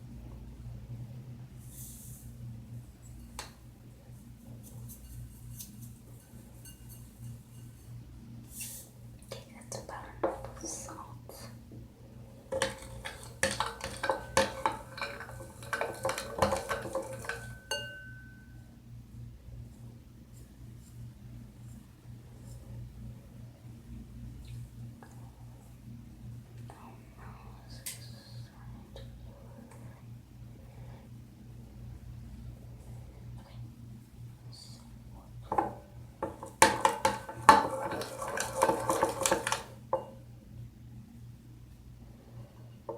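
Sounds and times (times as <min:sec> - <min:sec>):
spoon clinking against bowl: 0:12.6 - 0:18.6.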